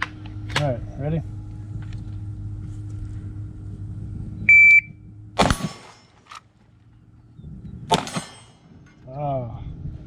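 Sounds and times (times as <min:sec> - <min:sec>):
shot timer beep: 0:04.5 - 0:04.9.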